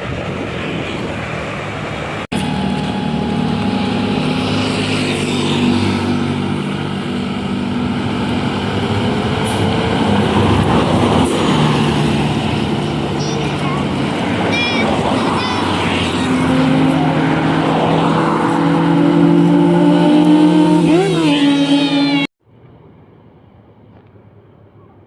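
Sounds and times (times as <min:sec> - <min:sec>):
bus engine: 0:00.0 - 0:22.3
road noise: 0:00.0 - 0:24.4
multi-tone air horn tune: 0:18.3 - 0:22.3.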